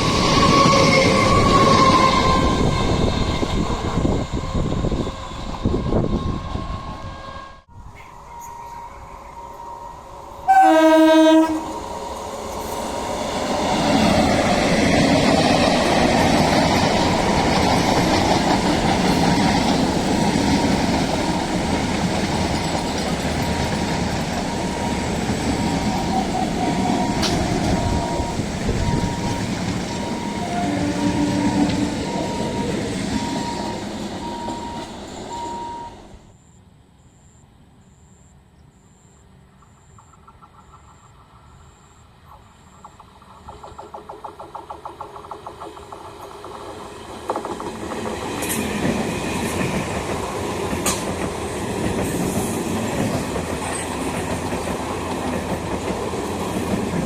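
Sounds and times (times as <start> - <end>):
train horn blasting: 0.0 - 5.0, 5.6 - 12.7, 25.8 - 33.7
train wheels clattering on rails: 12.4 - 35.4, 42.2 - 57.0.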